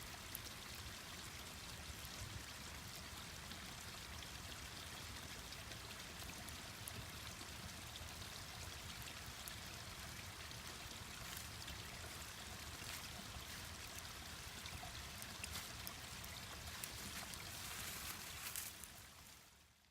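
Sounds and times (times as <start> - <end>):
mountain stream rushing: 10.2 - 19.4.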